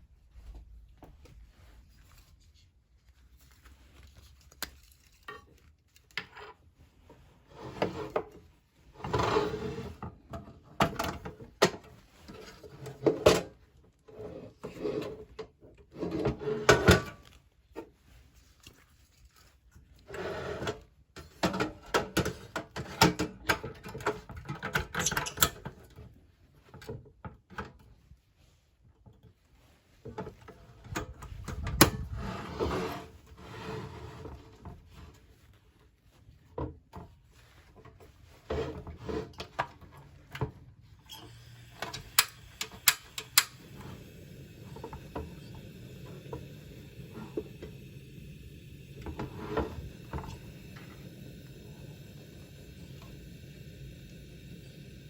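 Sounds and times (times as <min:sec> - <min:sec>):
objects rubbing and rustling: 0:00.0 - 0:55.0.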